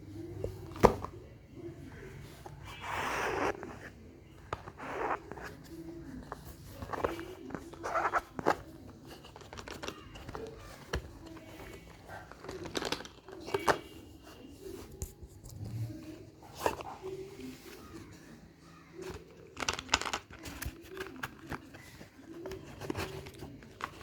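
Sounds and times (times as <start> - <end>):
packaging rustling and tearing: 6.8 - 14.0, 18.9 - 24.0.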